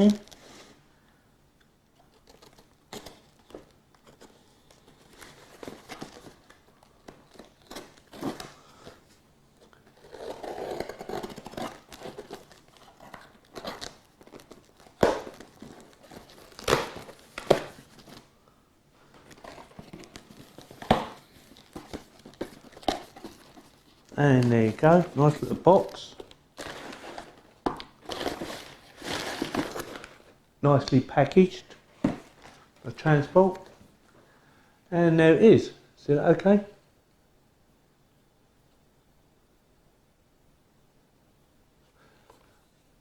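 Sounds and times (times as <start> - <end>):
wrapping crinkling and tearing: 2.1 - 18.3, 19.1 - 30.4.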